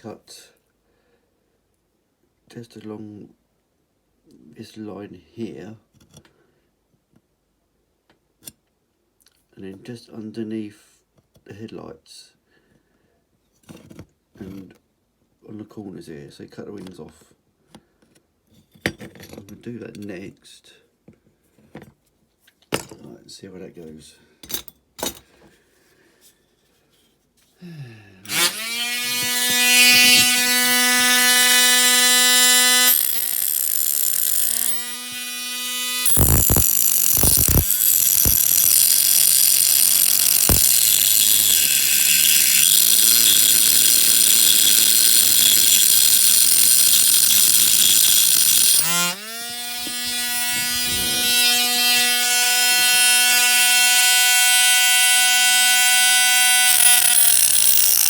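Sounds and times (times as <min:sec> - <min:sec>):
cut-off disc grinding metal: 0:28.3 - 0:58.0
rotary tool whining: 0:28.3 - 0:58.0.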